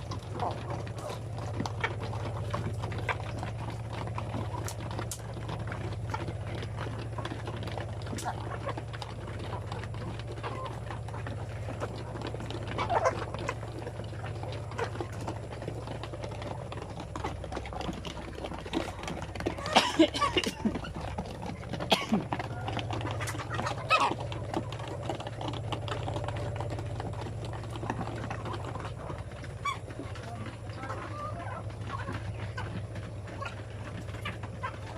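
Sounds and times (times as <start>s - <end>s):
chickens clucking: 0.0s - 34.9s
chickens pecking and scratching: 0.0s - 34.9s.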